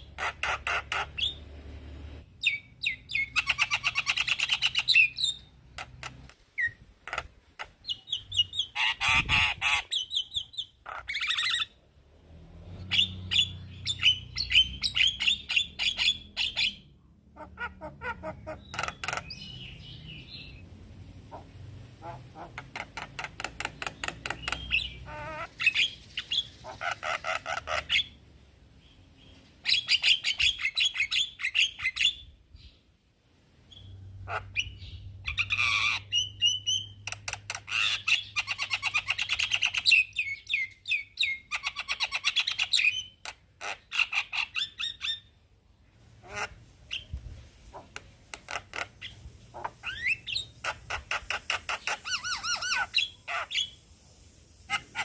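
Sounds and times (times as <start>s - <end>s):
myna chattering and squawking: 0.0s - 1.4s, 3.2s - 11.7s, 17.4s - 19.5s, 21.3s - 28.1s, 46.2s - 47.1s, 47.7s - 53.7s, 54.7s - 55.0s.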